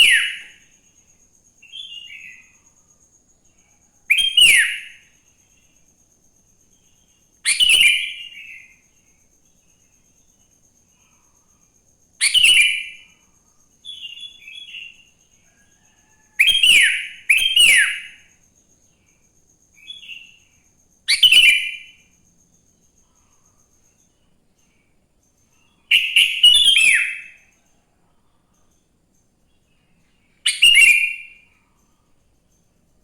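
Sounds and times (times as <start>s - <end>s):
bulbul singing: 0.0s - 0.7s, 4.1s - 5.6s, 6.8s - 9.0s, 12.2s - 13.1s, 25.5s - 27.4s, 30.5s - 31.6s.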